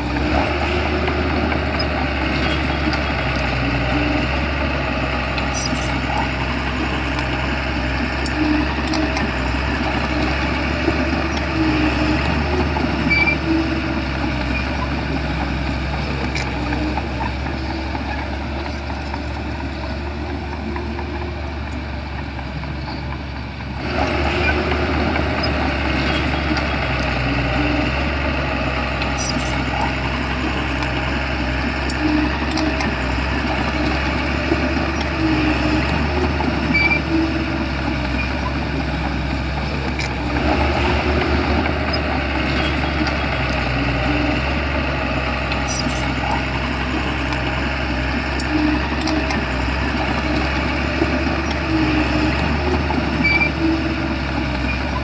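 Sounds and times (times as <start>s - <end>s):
bulldozer diesel engine running: 0.0s - 55.0s.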